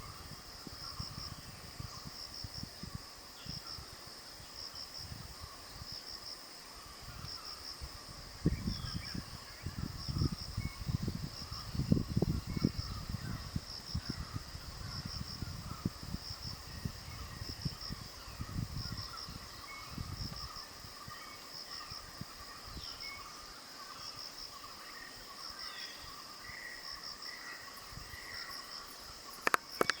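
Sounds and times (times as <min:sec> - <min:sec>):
high insect chirps: 0:00.0 - 0:30.0
insects trilling: 0:00.0 - 0:30.0
low insect drone: 0:00.0 - 0:30.0
sharp clicks: 0:29.4 - 0:30.0.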